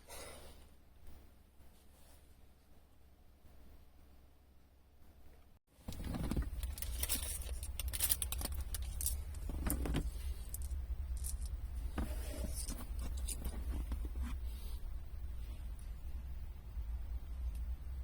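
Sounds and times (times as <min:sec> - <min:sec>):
steady low rumble: 0:06.0 - 0:18.0.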